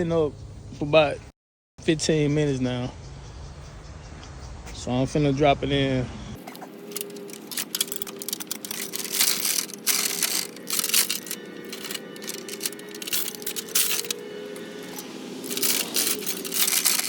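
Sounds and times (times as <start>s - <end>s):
engine hoist chain clicking and rattling: 6.4s - 17.0s.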